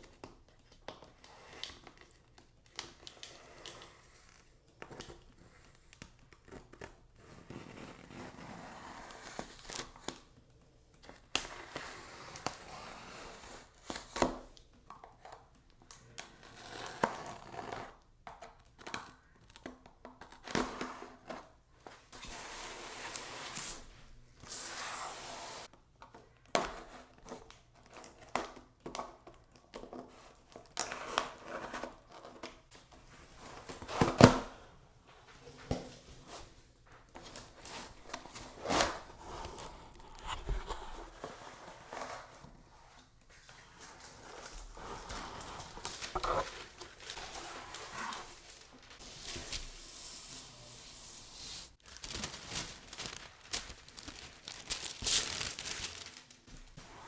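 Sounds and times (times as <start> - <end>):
paper and plastic tearing: 44.5 - 56.4.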